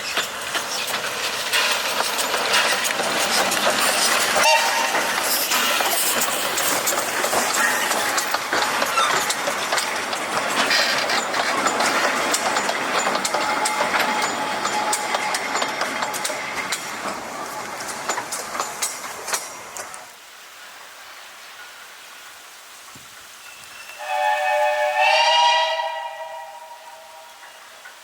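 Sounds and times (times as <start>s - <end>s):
wheels clicking over rail joints: 0.0s - 20.2s, 27.3s - 28.0s
hiss of steam: 0.0s - 28.0s.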